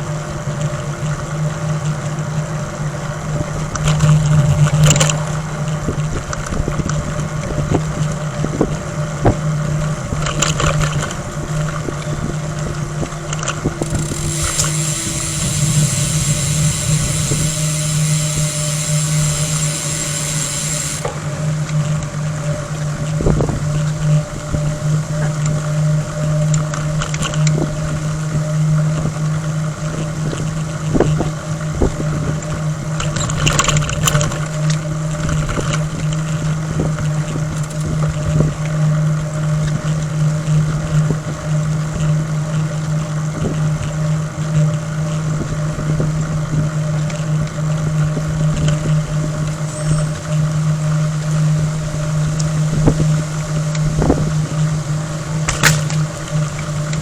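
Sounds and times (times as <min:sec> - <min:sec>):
bicycle road and wind noise: 0:00.0 - 0:57.0
low droning hum: 0:00.0 - 0:57.0
high hiss: 0:13.8 - 0:21.4.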